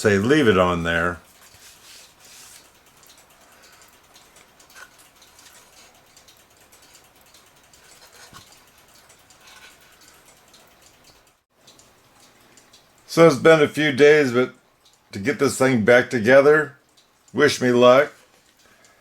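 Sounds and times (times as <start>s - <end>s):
faint rubbing and handling: 1.2s - 2.8s.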